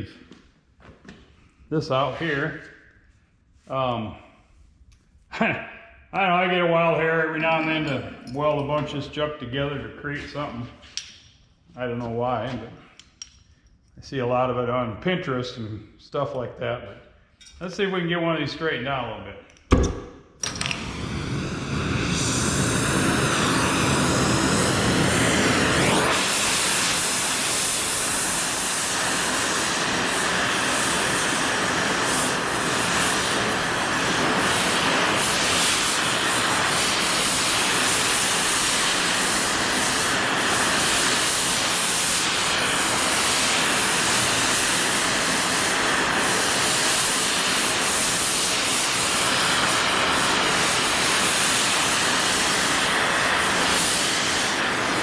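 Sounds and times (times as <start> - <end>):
gas torch hissing: 20.3 - 55.0.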